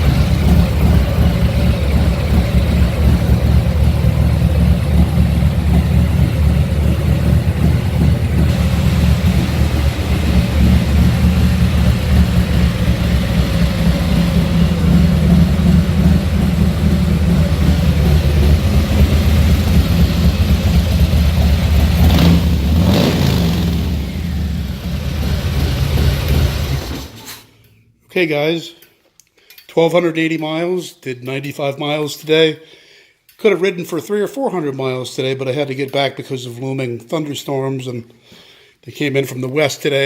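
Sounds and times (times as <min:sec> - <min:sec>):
motorcycle engine idling and revving: 0:00.0 - 0:27.2.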